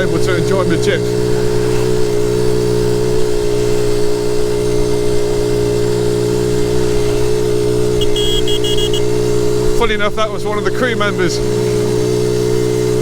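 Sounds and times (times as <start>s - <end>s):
small motorcycle engine running: 0.0s - 13.0s
high-pitched beeps: 8.0s - 9.0s.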